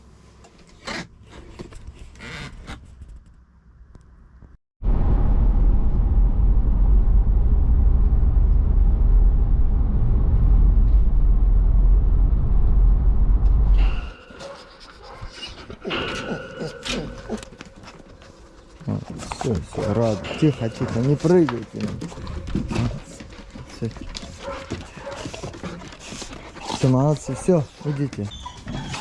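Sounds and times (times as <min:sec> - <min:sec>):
car rumble: 0:03.7 - 0:14.0
dogs whining and panting: 0:13.8 - 0:29.0.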